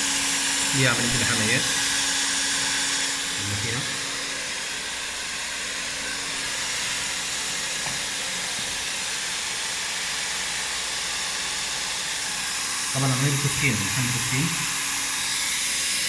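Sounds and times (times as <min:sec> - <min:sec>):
hot-air welder hissing: 0:00.0 - 0:16.0.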